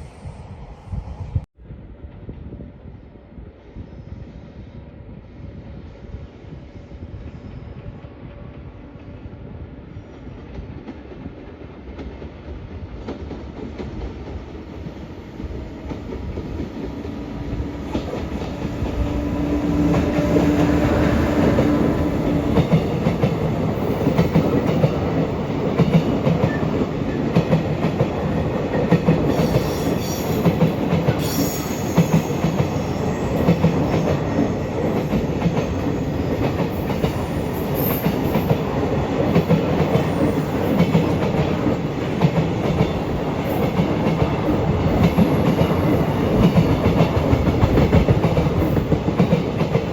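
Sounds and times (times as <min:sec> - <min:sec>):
train wheels clickety-clack: 0:07.2 - 0:49.9
electric locomotive hum: 0:14.3 - 0:49.9.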